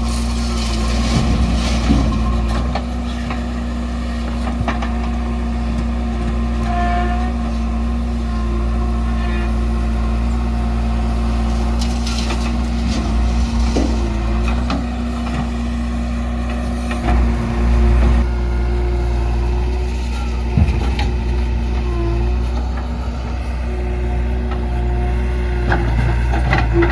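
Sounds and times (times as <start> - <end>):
diesel engine running: 0.0 - 26.9
metal clanks and knocks: 0.4 - 3.5, 20.0 - 23.0, 25.6 - 26.9.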